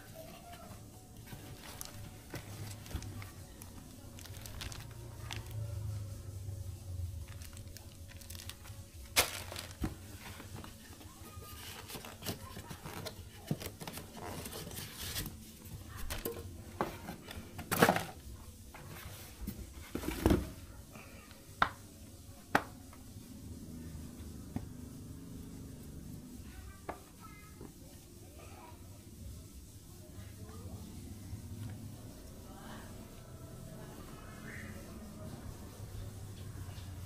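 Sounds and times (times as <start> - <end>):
plastic crinkling and rustling: 0.0 - 6.0, 7.1 - 20.6.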